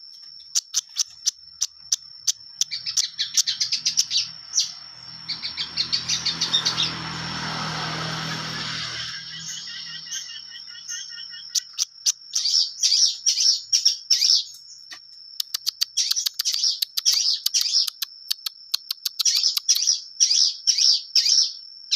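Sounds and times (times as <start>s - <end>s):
shrike singing harsh chattering notes: 0.5s - 14.5s.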